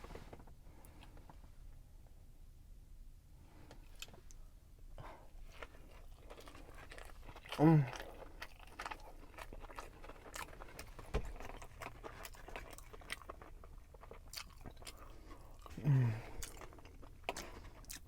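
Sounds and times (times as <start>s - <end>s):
chewing with wet mouth clicks: 5.4s - 18.0s
person humming: 15.8s - 16.3s.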